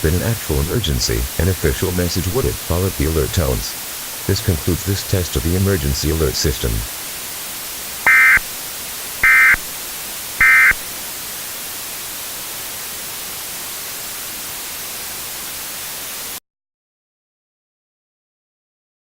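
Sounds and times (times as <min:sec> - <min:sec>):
static hiss: 0:00.0 - 0:16.4
buzzy data tone bursts: 0:08.0 - 0:08.6, 0:09.2 - 0:09.7, 0:10.4 - 0:10.9.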